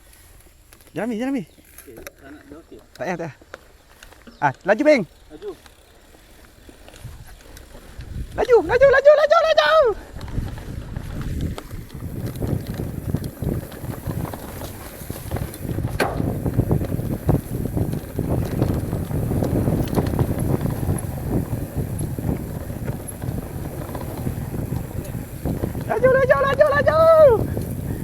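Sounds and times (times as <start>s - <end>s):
bike tyres rumbling on dirt: 0.0s - 28.0s
bike knocking and rattling: 10.0s - 28.0s.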